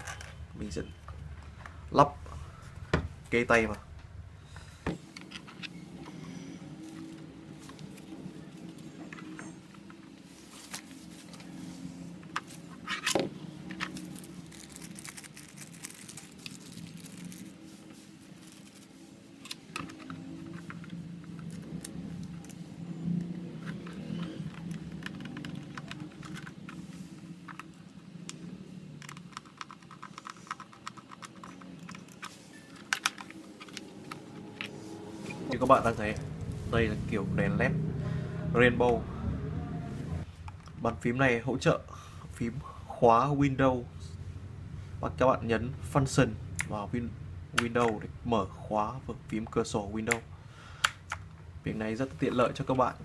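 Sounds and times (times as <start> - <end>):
low steady hum: 0.0 - 53.0
plastic keyboard clicks and knocks: 23.7 - 26.8, 29.0 - 32.2.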